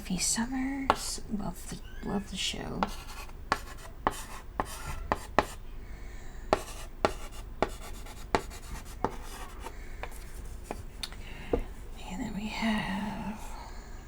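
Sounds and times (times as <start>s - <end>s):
chalk scratching on chalkboard: 0.9s - 1.2s, 2.8s - 5.6s, 6.5s - 10.9s
chalk tapping on chalkboard: 0.9s - 1.2s, 2.8s - 5.6s, 6.5s - 10.9s.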